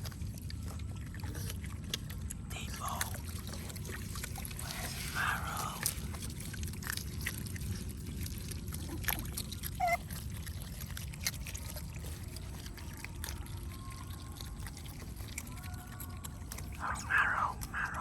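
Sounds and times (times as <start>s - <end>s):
water trickling and splashing: 0.0s - 18.0s
steady low rumble: 16.6s - 18.0s.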